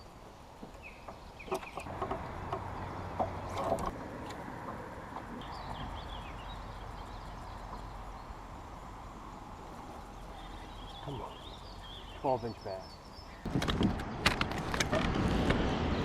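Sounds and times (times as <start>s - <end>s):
bird chirps: 5.4s - 8.8s, 9.8s - 13.5s
knocks and clicks of kayak gear: 13.5s - 15.2s.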